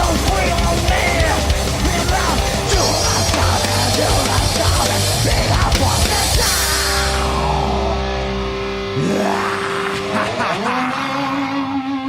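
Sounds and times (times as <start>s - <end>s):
drums and cymbals: 0.0s - 7.4s
distorted electric guitar: 0.0s - 12.0s.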